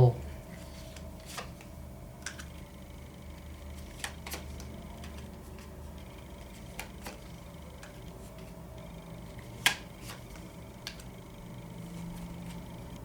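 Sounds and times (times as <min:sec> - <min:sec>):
faint steady hum: 0:00.0 - 0:13.0
cards clicking and tapping: 0:00.7 - 0:02.5, 0:03.8 - 0:08.6, 0:09.3 - 0:11.2.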